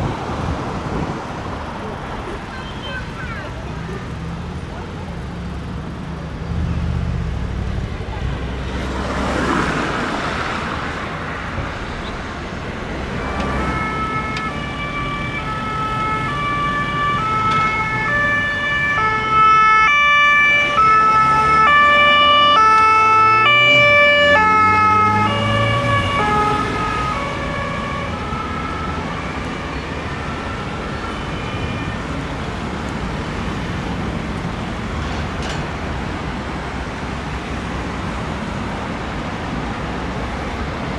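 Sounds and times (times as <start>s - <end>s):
vehicle passing: 3.4s - 35.1s
vehicle engine rising: 3.8s - 31.0s
two-tone siren: 13.2s - 32.2s.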